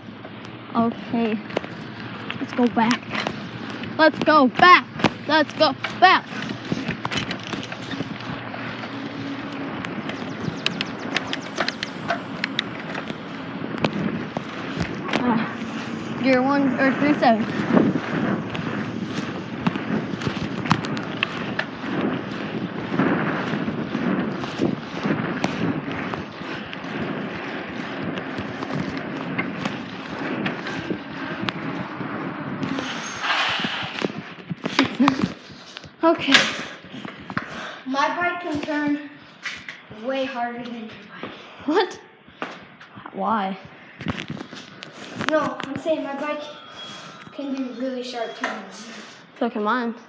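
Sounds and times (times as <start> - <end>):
bicycle tyre and wind noise: 0.0 - 49.7
sharp clicks and knocks: 9.8 - 15.3.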